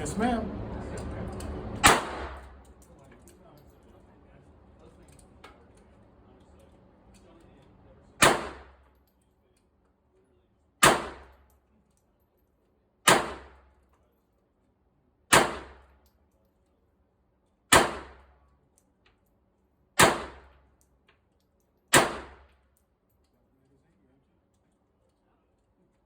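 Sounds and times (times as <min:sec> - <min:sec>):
pistol shots with ringing echo: 0:01.8 - 0:02.6, 0:08.2 - 0:08.8, 0:10.8 - 0:11.4, 0:13.1 - 0:13.6, 0:15.3 - 0:15.9, 0:17.7 - 0:18.3, 0:20.0 - 0:20.5, 0:21.9 - 0:22.5.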